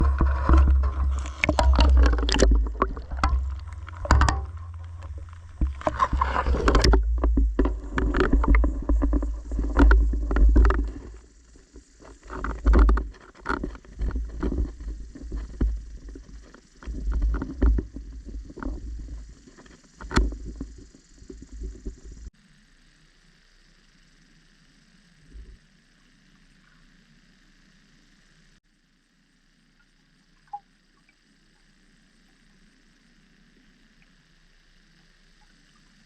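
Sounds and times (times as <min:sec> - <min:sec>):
knocks and clicks underwater: 0:00.0 - 0:22.3
underwater rumble of moving water: 0:00.0 - 0:36.0.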